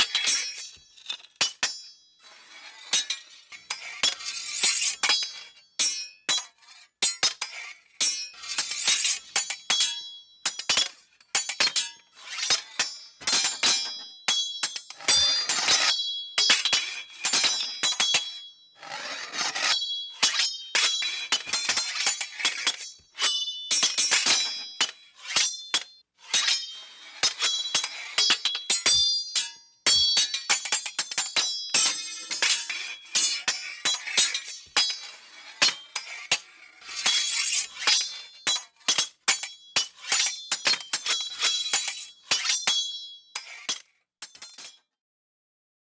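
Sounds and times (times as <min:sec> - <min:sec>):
sword blade swishes and slashes: 0:11.4 - 0:29.3, 0:29.9 - 0:44.8.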